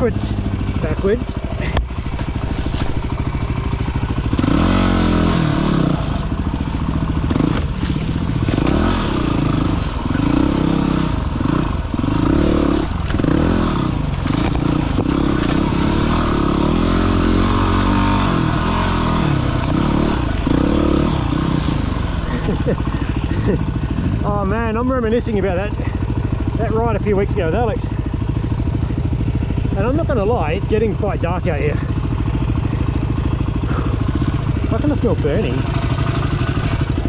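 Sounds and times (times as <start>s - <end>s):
bike clatter: 0.0s - 23.7s
dirt bike engine revving: 0.0s - 31.0s, 31.7s - 37.0s.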